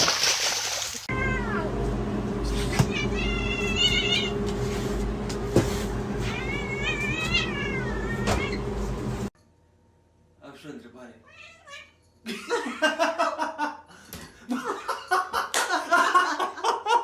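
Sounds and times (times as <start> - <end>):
cat meowing: 1.1 - 1.8, 2.8 - 4.4, 6.2 - 8.6, 11.2 - 12.0.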